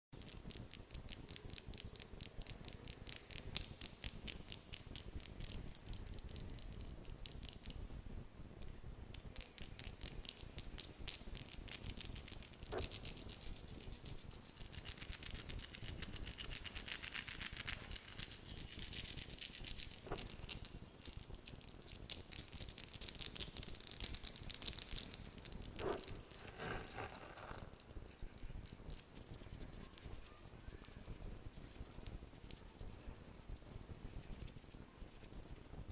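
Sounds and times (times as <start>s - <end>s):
brushing hiss: 9.3s - 33.1s.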